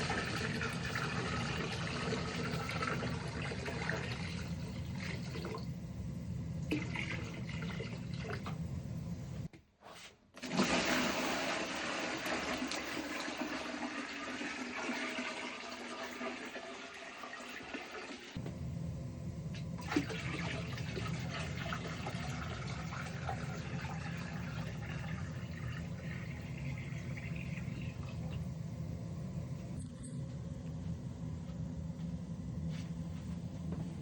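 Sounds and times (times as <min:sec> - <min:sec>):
low hum: 0:00.0 - 0:09.5, 0:18.4 - 0:34.0.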